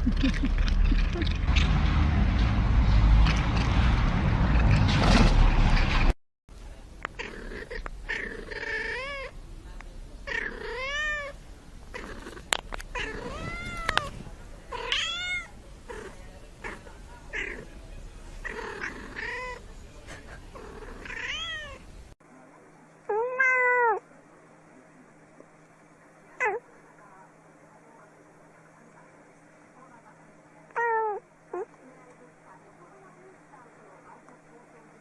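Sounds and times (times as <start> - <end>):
cat meowing: 7.6 - 9.3, 10.3 - 11.4, 12.0 - 15.6, 20.6 - 21.8, 23.1 - 24.0, 30.7 - 31.7.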